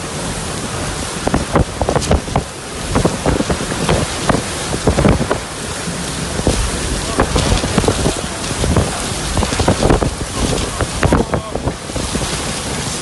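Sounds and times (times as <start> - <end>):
storm rain: 0.0 - 13.0
wind buffeting microphone: 0.0 - 13.0.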